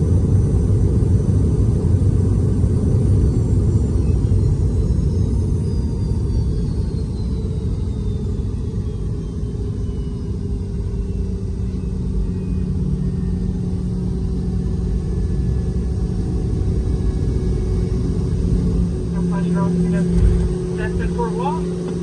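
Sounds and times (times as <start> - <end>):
jet engine whine falling: 0.0 - 22.0
aircraft cabin rumble: 10.4 - 22.0
steady hum: 10.9 - 22.0.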